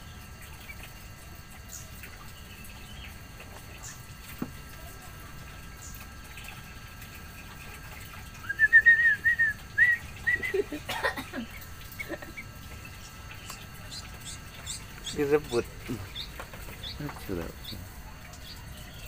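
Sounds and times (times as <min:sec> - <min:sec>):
small bird chirping: 0:11.4 - 0:19.0.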